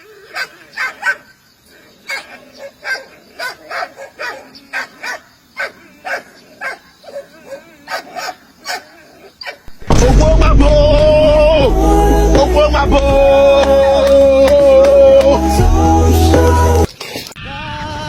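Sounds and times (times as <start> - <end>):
dog barking: 0.3 - 1.3, 2.0 - 9.6.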